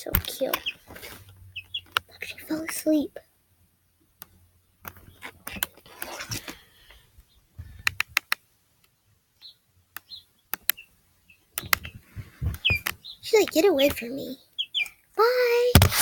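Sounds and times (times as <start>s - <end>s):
sharp clicks and taps: 0.0s - 0.7s, 1.8s - 2.1s, 7.8s - 8.9s, 9.9s - 10.8s, 11.6s - 14.0s
chick peeping: 0.4s - 2.5s, 9.4s - 15.0s.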